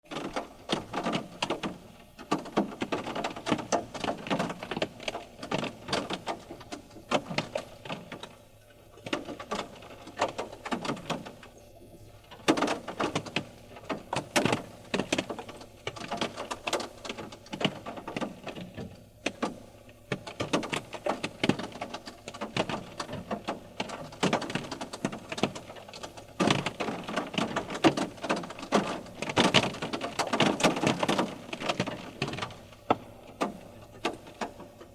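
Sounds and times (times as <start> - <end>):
water drops tapping on a car: 12.5 - 34.9.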